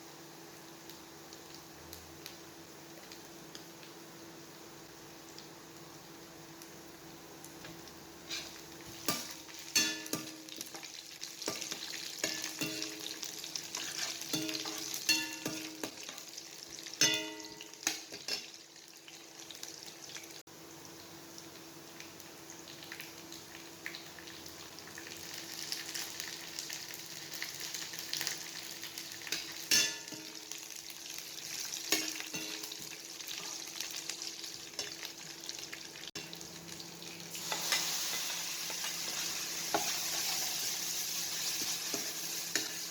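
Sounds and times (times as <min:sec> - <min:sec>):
food sizzling in oil: 0:00.0 - 0:42.9
metal spatula clanking on pan: 0:08.3 - 0:10.8, 0:11.4 - 0:13.1, 0:13.8 - 0:16.2, 0:17.0 - 0:18.5, 0:29.3 - 0:30.4, 0:31.9 - 0:32.8.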